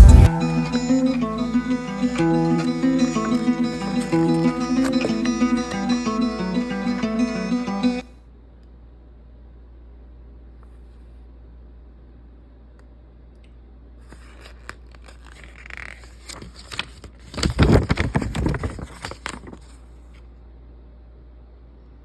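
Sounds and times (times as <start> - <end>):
packaging crinkling and tearing: 2.2 - 5.7, 14.1 - 19.8.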